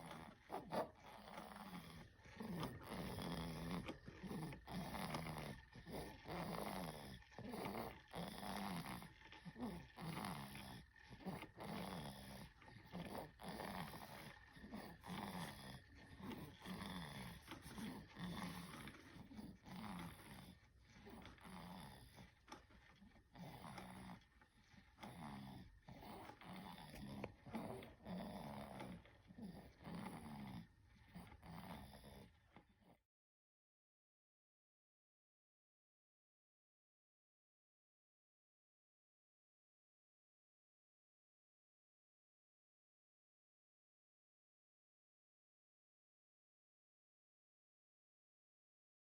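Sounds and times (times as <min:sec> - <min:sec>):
baby snoring faintly: 0:00.0 - 0:33.0.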